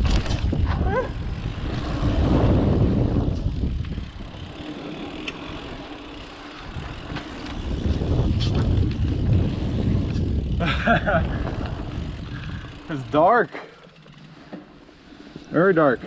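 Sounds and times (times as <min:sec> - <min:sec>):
wind on microphone: 0:00.0 - 0:04.6, 0:06.7 - 0:12.7
bike tyres rattling on dirt: 0:00.0 - 0:16.0.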